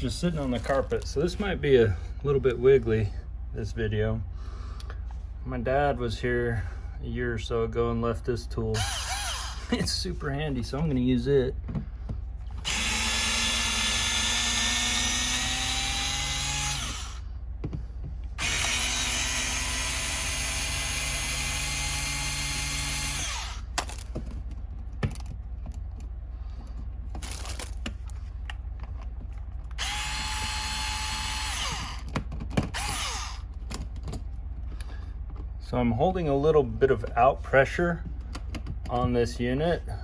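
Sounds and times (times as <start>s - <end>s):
power drill running: 8.8s - 9.8s, 12.6s - 17.2s, 18.4s - 23.7s, 29.8s - 32.1s, 32.7s - 33.4s.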